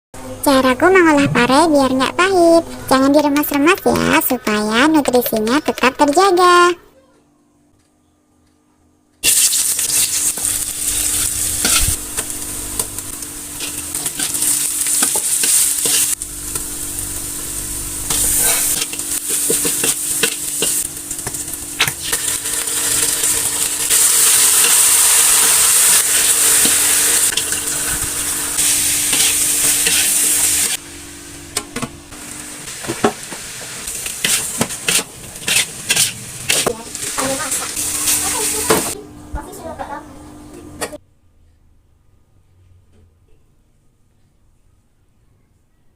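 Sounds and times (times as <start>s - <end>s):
food sizzling in oil: 9.2s - 31.5s, 32.1s - 39.0s
spatula scraping pan: 18.1s - 20.8s, 28.6s - 30.3s, 34.2s - 37.4s.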